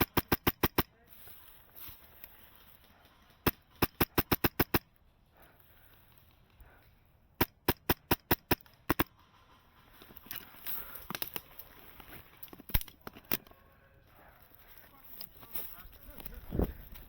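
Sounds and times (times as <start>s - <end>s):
airsoft gun sharp shots: 0.0s - 0.9s, 3.4s - 4.9s, 7.4s - 9.1s.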